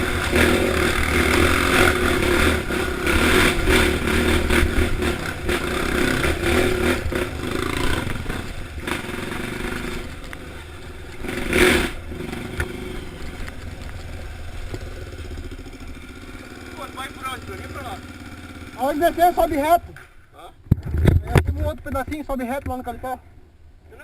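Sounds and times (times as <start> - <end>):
dirt bike engine running: 0.0 - 19.8
clattering and scraping knocks: 20.7 - 22.9.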